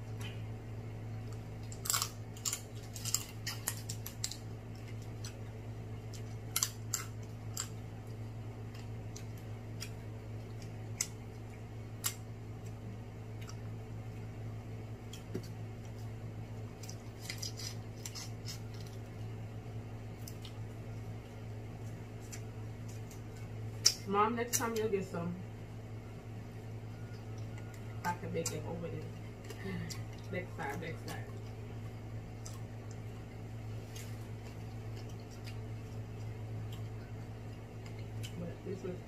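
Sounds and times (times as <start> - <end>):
steady low hum: 0.0 - 39.0
crab shells cracking: 1.3 - 13.7, 15.0 - 19.2.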